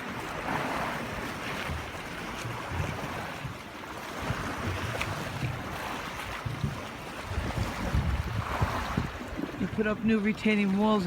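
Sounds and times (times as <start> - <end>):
waves washing: 0.0 - 11.0
wind gusting on microphone: 6.4 - 10.2.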